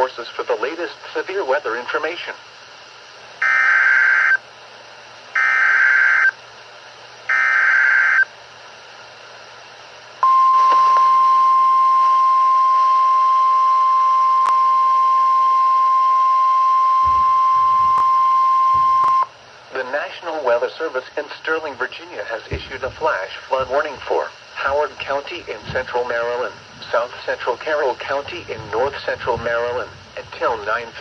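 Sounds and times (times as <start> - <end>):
electronic data bursts: 3.4 - 4.4, 5.4 - 6.4, 7.3 - 8.3
steady warning tone: 3.4 - 4.4, 5.4 - 6.4, 7.3 - 8.3, 10.2 - 19.4, 22.6 - 31.0.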